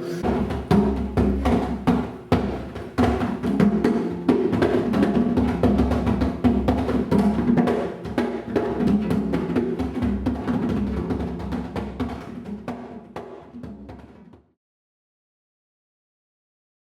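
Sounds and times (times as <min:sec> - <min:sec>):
sustained pitched notes: 0:00.0 - 0:00.3
drums and percussion music: 0:00.0 - 0:14.4.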